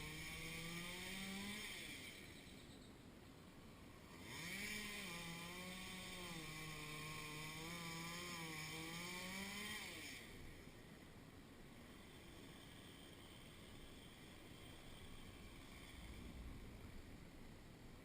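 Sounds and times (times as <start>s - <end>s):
chainsaw revving: 0.0s - 2.3s, 4.0s - 10.6s, 11.9s - 16.6s.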